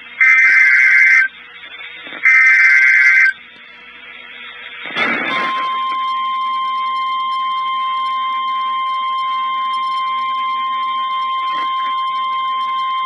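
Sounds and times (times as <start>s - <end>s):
high-pitched warning alarm tone: 0.2s - 1.3s, 2.2s - 3.4s, 5.0s - 13.0s.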